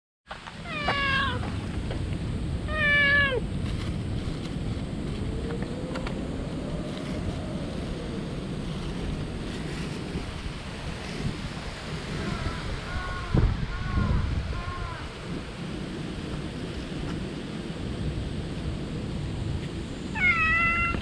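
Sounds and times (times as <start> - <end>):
cat meowing: 0.7 - 1.4, 2.7 - 3.4, 20.1 - 21.0.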